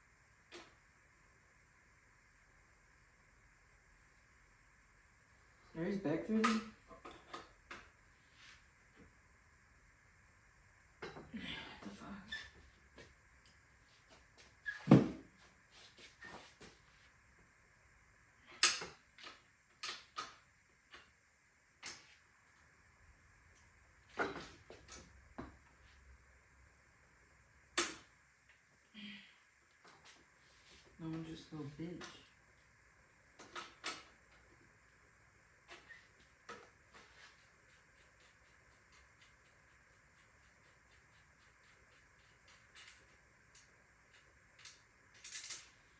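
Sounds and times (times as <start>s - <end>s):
metal bicycle parts clicking: 44.1s - 45.7s.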